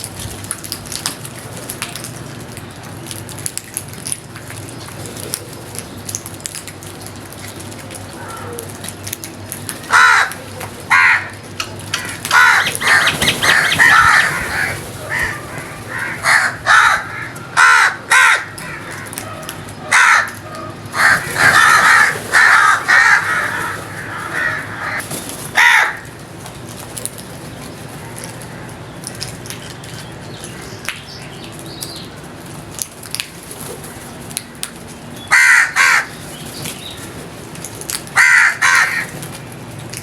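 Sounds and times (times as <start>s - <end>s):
crows cawing: 9.9s - 25.0s, 25.6s - 26.1s, 35.3s - 36.2s, 38.2s - 39.2s.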